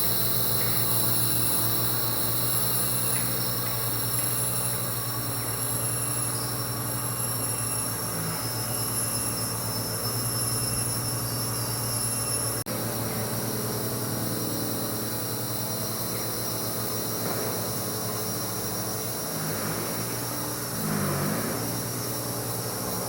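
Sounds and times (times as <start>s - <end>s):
insects droning: 0.0s - 23.0s.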